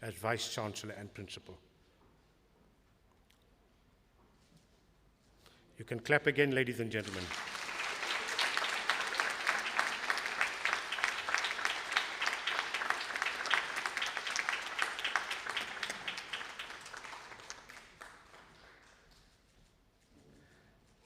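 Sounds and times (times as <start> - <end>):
audience applauding: 7.0 - 19.0.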